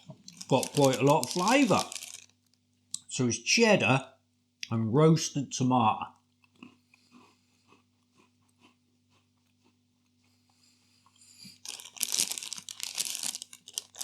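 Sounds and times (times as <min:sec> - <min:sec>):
chewing crackers: 0:00.0 - 0:02.5, 0:06.1 - 0:10.6, 0:11.4 - 0:14.0
snack packet crinkling: 0:00.0 - 0:02.6, 0:11.5 - 0:14.0.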